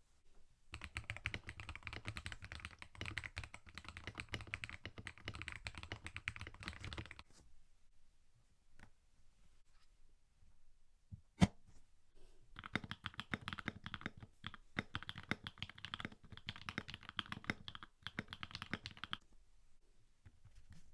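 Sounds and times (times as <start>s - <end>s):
mechanical keyboard typing: 0.7s - 7.2s, 12.6s - 19.2s.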